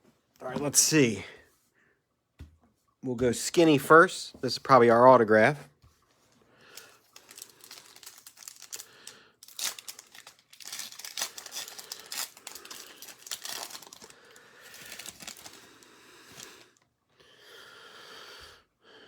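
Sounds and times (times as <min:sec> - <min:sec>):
card pack wrapper tearing and crinkling: 0:06.7 - 0:16.6.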